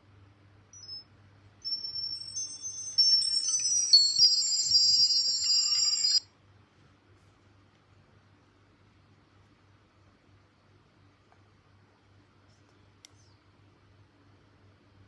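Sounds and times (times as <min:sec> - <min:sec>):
phone ringtone melody: 0:01.7 - 0:06.2.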